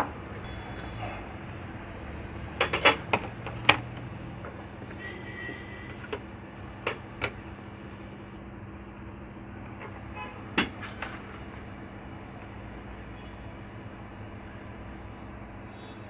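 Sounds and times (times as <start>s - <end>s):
low electrical hum: 0.0s - 1.5s, 2.8s - 8.4s, 9.8s - 15.3s
tools clicking on circuit board: 2.7s - 8.4s.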